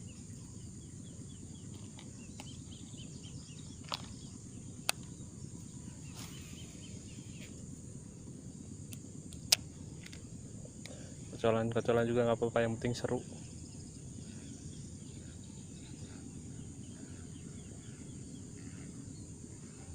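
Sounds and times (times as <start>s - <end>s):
small bird chirping: 0.0s - 7.7s
insect drone: 0.0s - 19.9s
low steady rumble: 0.0s - 19.9s.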